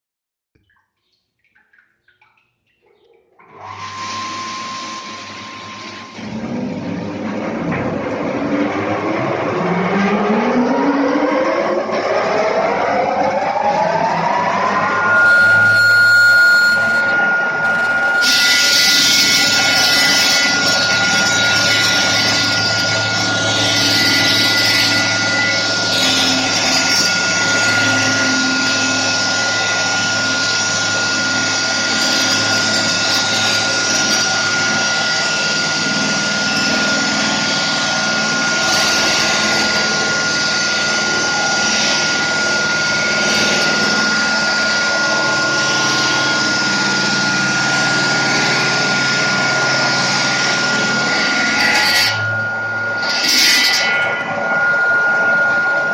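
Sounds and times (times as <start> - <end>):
stone-cutting saw whining: 3.5 - 55.9.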